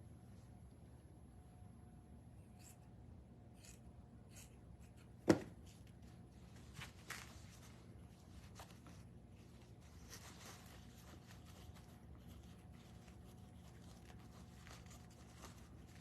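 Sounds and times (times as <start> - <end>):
rustling of craft materials: 5.2 - 16.0.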